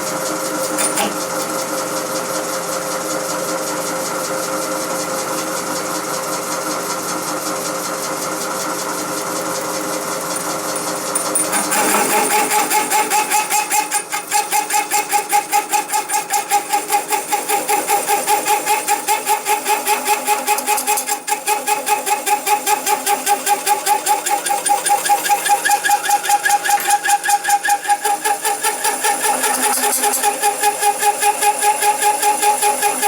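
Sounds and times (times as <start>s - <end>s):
hole saw cutting metal plate: 0.4s - 2.0s, 9.5s - 33.0s.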